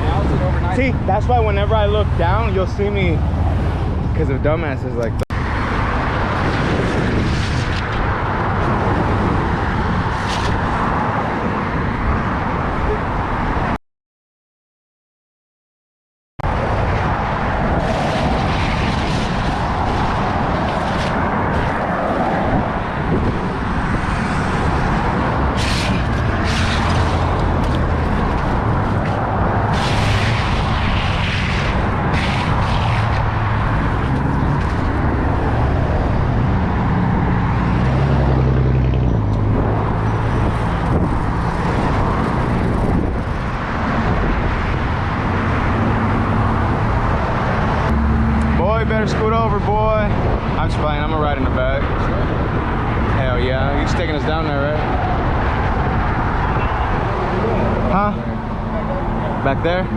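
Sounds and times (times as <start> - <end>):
road and wind noise: 0.0 - 13.8, 16.4 - 59.9
vehicle engine hum: 16.5 - 59.9.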